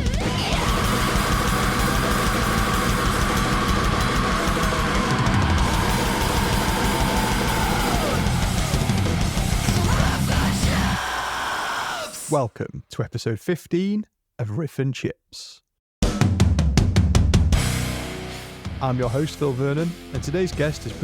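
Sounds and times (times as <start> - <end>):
fast drum-kit playing: 0.0 - 11.0, 16.0 - 21.0
heavy metal music: 0.0 - 12.3, 17.4 - 21.0.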